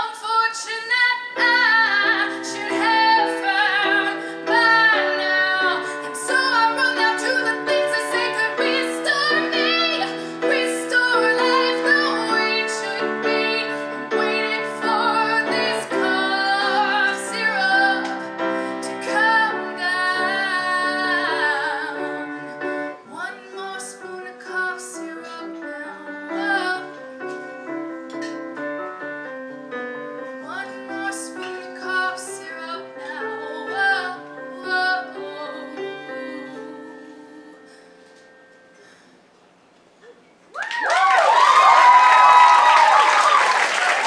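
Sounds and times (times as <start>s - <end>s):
woman singing a ballad: 0.0s - 27.4s, 30.4s - 38.2s
piano accompaniment: 1.2s - 39.3s.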